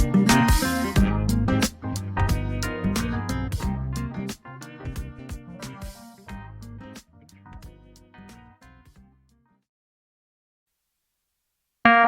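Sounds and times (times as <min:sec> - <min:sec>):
music with steady beat and bass: 0:00.0 - 0:09.1.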